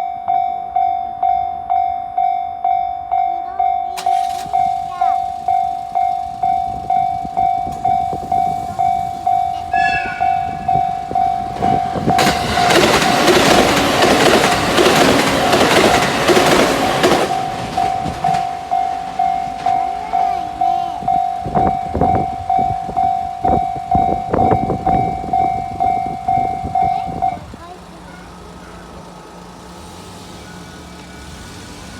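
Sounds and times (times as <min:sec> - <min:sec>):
level crossing warning bell: 0:00.0 - 0:31.9
train passing on rails: 0:00.0 - 0:31.9
short train horn: 0:08.6 - 0:11.8.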